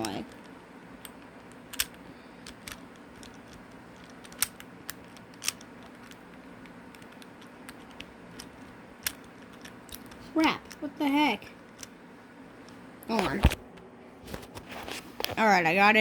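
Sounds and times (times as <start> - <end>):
plastic cube pieces clicking: 0.0 - 10.8.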